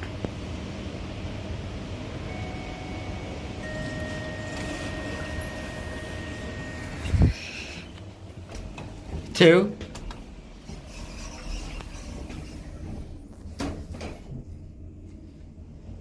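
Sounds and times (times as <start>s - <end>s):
elevator machinery hum: 0.0s - 16.0s
elevator chime tones: 2.2s - 7.9s.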